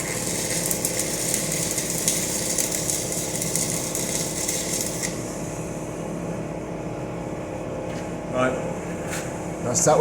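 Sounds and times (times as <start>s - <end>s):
welding arc crackling: 0.0s - 5.5s.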